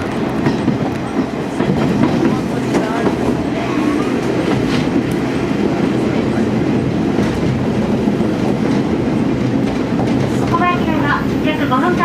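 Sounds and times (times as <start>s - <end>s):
railcar engine and wheels rumbling: 0.0s - 12.0s.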